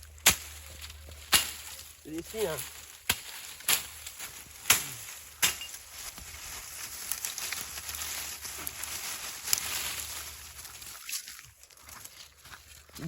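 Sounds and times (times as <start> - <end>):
faint crackles and rustles: 0.0 - 13.0
sharp chopping strikes: 0.2 - 0.6, 1.3 - 1.8, 3.0 - 4.0, 4.6 - 5.8.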